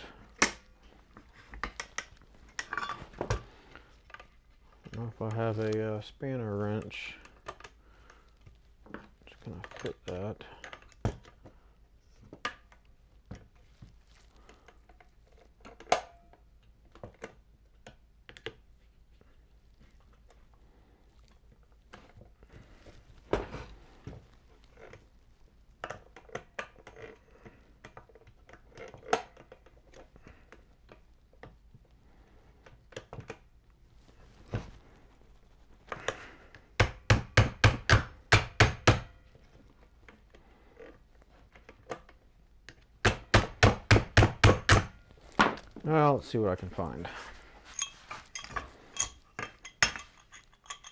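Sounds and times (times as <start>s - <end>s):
tools knocking and clicking: 0.4s - 0.7s, 1.6s - 3.5s, 36.8s - 39.2s, 43.1s - 45.7s, 47.7s - 50.9s.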